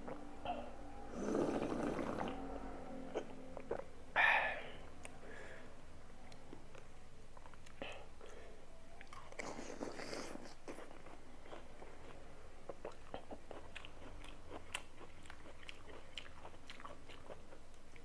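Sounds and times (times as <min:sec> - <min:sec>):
crunchy chewing: 0:06.2 - 0:18.0.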